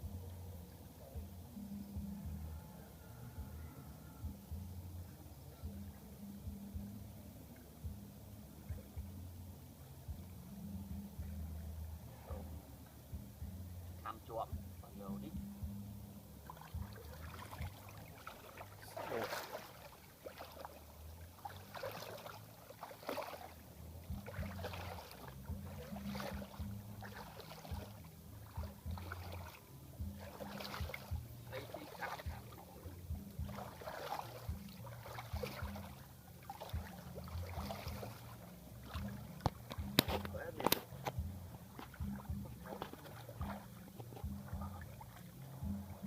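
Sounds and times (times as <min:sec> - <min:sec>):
water splashing and sloshing: 0:12.1 - 0:46.0
steady low rumble: 0:23.6 - 0:46.0.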